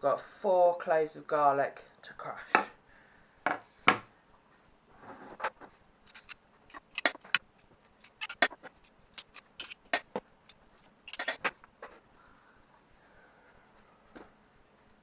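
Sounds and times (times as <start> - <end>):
kitchen utensils clicking: 6.1 - 11.6.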